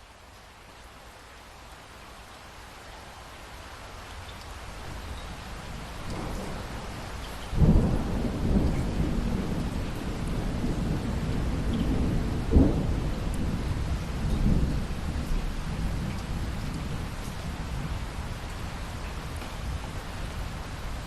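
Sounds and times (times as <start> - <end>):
steady rain: 0.0 - 21.0
thunder rumbling: 5.9 - 18.4.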